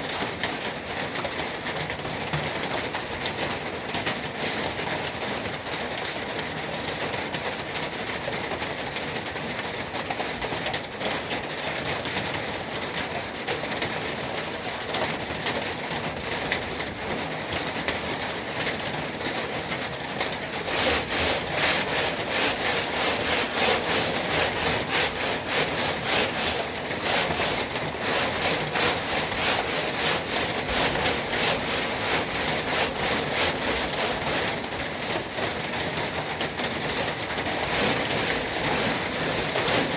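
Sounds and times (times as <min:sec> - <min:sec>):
sandpaper rubbing on metal: 0:17.0 - 0:18.1, 0:20.6 - 0:34.8, 0:37.5 - 0:39.9.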